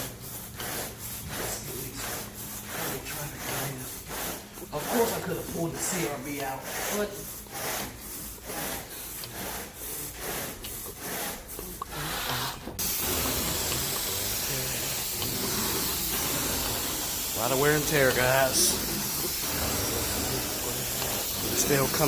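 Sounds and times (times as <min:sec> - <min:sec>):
brush scrubbing carpet: 0:00.0 - 0:22.0
carpet cleaning wand spraying hiss: 0:11.9 - 0:22.0.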